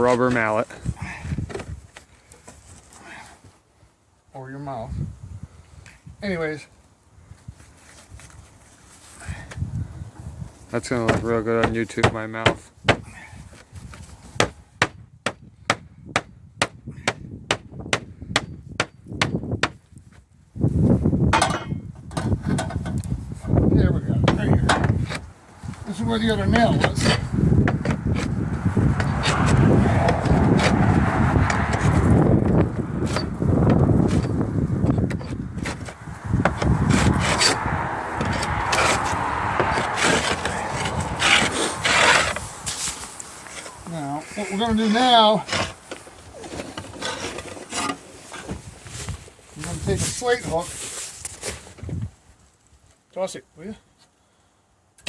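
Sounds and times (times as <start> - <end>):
hammer rapping on roof slate: 11.0 - 13.1, 14.4 - 19.8
scraping on roof slates: 35.1 - 42.5, 44.8 - 48.7.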